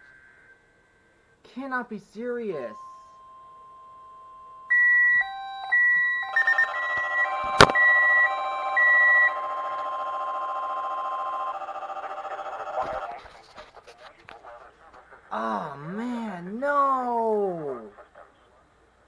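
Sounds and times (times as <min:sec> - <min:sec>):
alarm tones: 0:02.4 - 0:13.1
on-off electronic beeping: 0:02.7 - 0:13.1.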